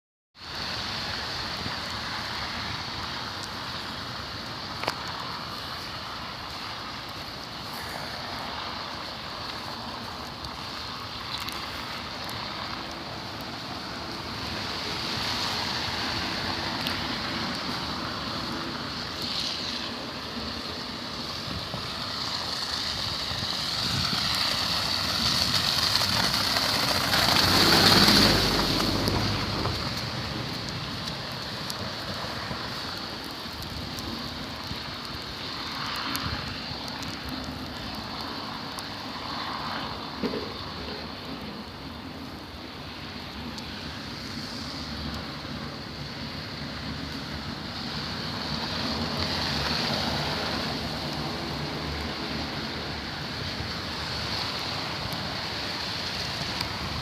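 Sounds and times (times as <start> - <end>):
traffic noise: 0.4 - 57.0
wind noise: 0.7 - 57.0
vehicle passing close: 21.2 - 32.8.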